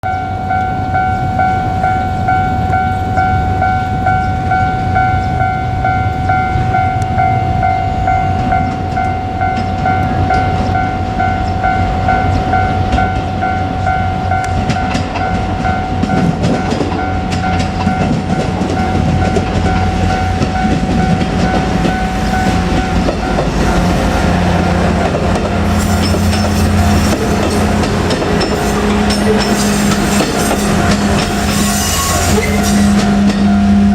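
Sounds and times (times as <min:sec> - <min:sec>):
diesel railcar engine rumble: 0:00.0 - 0:33.9
level-crossing warning bell ringing: 0:00.0 - 0:33.9
train wheels clacking on rail joints: 0:08.2 - 0:33.7.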